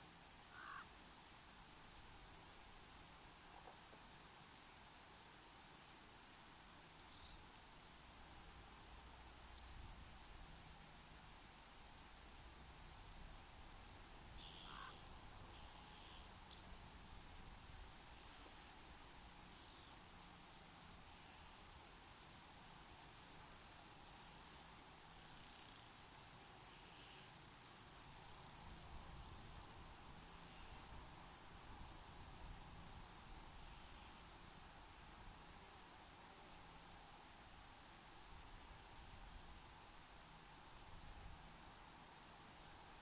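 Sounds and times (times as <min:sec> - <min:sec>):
cricket chirping: 0:00.0 - 0:04.6, 0:14.4 - 0:23.2, 0:23.8 - 0:31.0, 0:32.0 - 0:36.0
faint steady hiss: 0:00.0 - 0:43.0.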